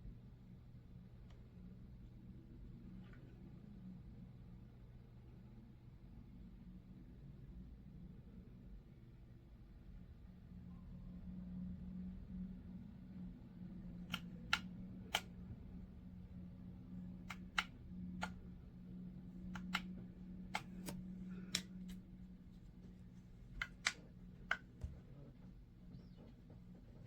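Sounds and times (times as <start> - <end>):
sharp clicks and taps: 14.1 - 15.3, 17.2 - 18.4, 19.4 - 22.0, 23.6 - 25.0.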